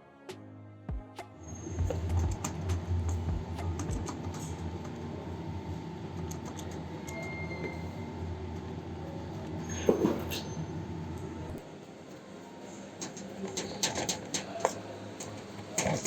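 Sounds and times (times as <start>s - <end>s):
low machine hum: 1.4s - 13.4s.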